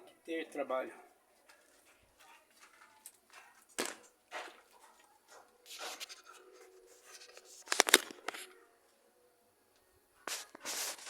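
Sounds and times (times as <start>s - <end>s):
scrapes and rubs of metal parts: 4.8s - 8.5s, 10.3s - 11.0s.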